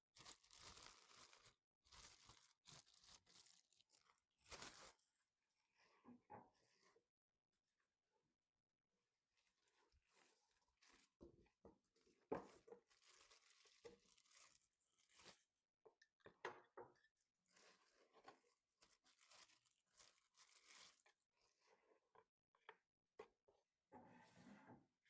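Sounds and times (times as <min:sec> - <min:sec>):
plastic packaging crinkling: 0:00.1 - 0:05.0, 0:12.8 - 0:15.4, 0:18.8 - 0:21.1.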